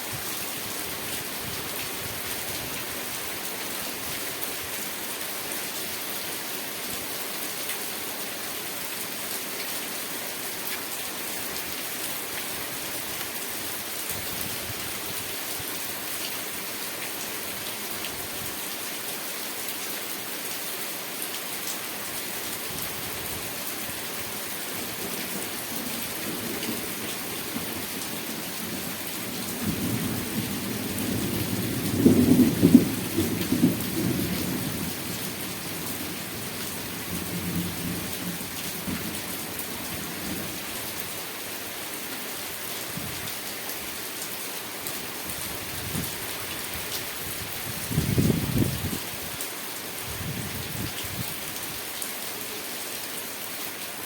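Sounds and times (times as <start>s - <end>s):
rain pattering: 21.6s - 49.6s.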